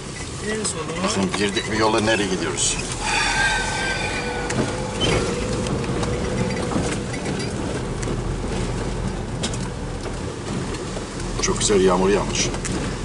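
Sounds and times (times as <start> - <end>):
high squeal: 1.7 - 9.0
car rumbling on rough road: 5.4 - 13.0.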